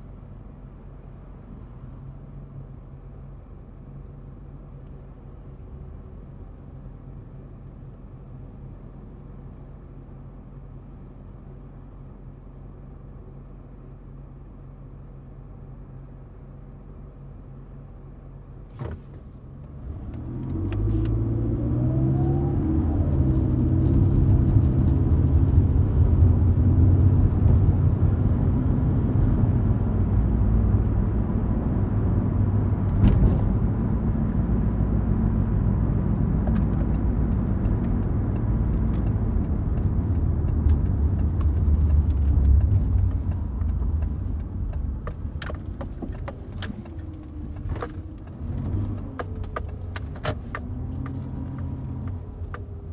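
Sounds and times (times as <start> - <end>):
road noise: 0.0 - 52.9
car engine accelerating: 19.6 - 52.9.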